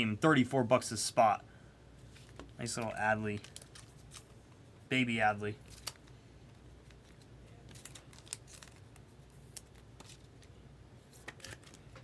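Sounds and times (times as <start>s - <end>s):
trading cards handled: 5.6s - 12.0s.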